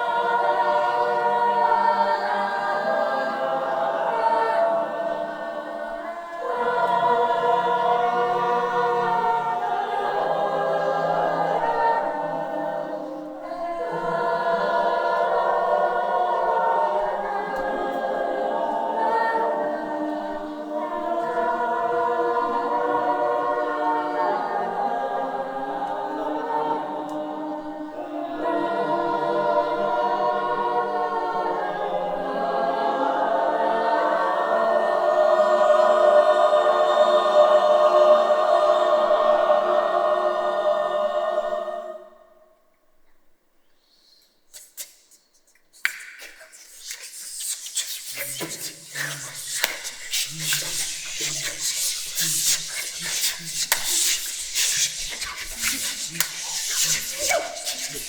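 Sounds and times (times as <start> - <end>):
choir singing held chords: 0.0 - 42.6, 46.3 - 58.0
singers breathing: 43.8 - 58.0.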